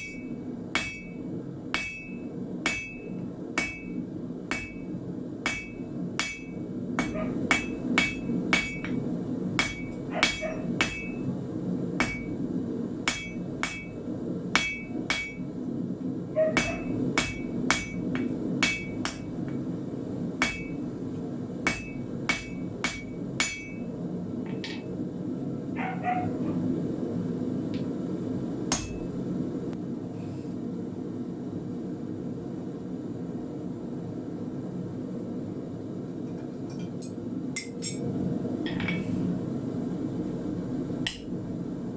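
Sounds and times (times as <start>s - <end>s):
hammer ringing on anvil: 0.0s - 1.2s, 1.8s - 4.9s, 5.5s - 9.0s, 9.6s - 11.2s, 12.0s - 12.4s, 13.1s - 14.0s, 14.6s - 15.4s, 16.6s - 19.3s, 20.4s - 20.8s, 21.7s - 23.8s, 28.7s - 29.0s.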